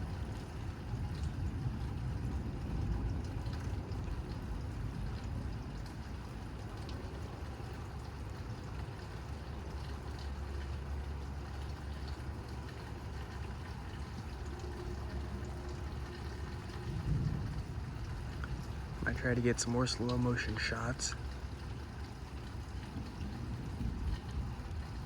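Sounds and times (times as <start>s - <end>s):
storm wind buffeting microphone: 16.9s - 19.9s, 22.9s - 25.0s.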